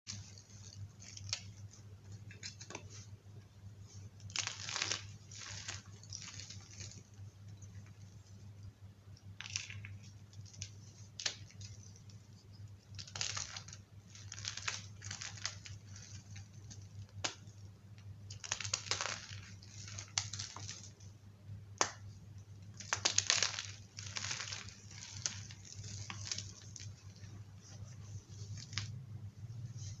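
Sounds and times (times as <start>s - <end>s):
chalk crunching and crumbling: 3.9s - 8.4s, 9.3s - 17.6s, 22.7s - 29.0s.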